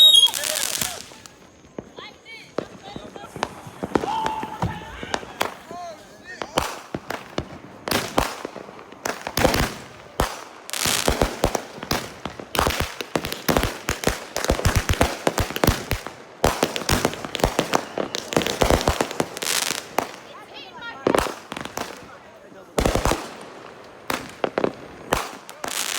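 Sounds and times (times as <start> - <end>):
fireworks bangs and crackling: 0.0 - 25.9.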